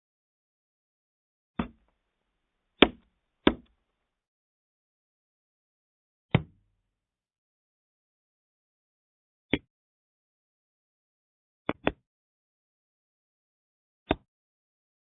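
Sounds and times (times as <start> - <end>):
hand stamp knocking: 2.8 - 3.7.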